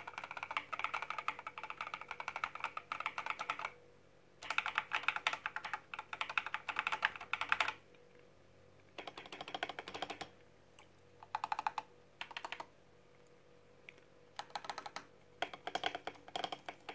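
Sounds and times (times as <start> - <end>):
mechanical keyboard typing: 0.0 - 3.8, 4.4 - 7.8, 9.0 - 10.4, 11.2 - 12.7, 14.4 - 16.9.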